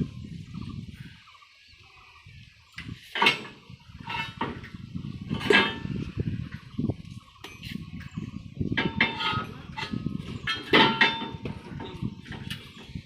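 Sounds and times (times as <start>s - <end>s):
excavator steel clanking: 3.1s - 6.2s, 8.7s - 13.0s.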